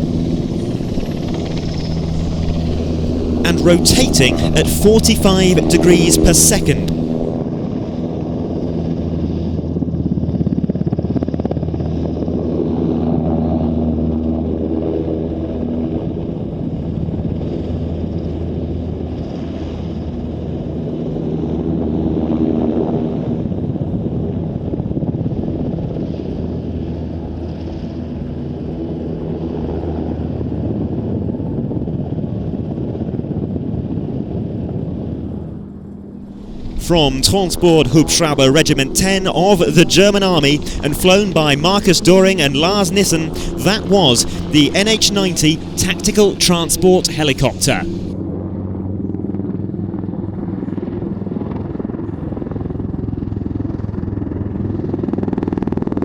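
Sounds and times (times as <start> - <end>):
helicopter droning hum: 0.0 - 19.4, 36.1 - 56.0.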